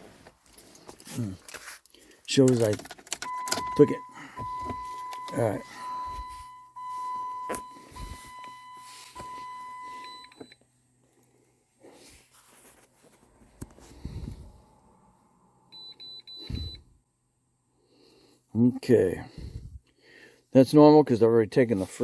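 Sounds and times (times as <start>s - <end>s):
steady electronic beep tone: 3.2s - 10.6s, 15.7s - 16.8s.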